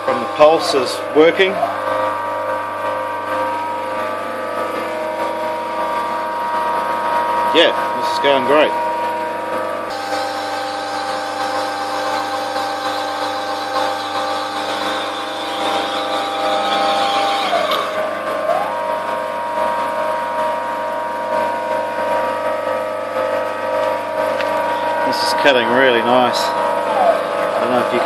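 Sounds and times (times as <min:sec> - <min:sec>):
stepper motors whining: 0:00.0 - 0:28.0.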